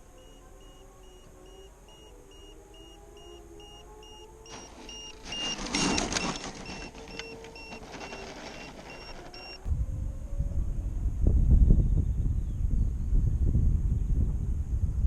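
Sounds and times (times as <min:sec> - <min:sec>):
short high electronic beeps: 0:00.2 - 0:09.6
rustling noise: 0:03.2 - 0:09.7
wind buffeting microphone: 0:09.6 - 0:15.0.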